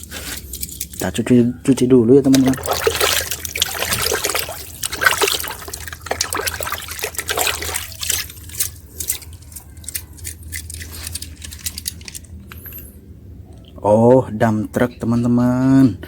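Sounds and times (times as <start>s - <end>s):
water splashing and trickling: 2.2s - 9.6s
water dripping: 2.2s - 10.0s.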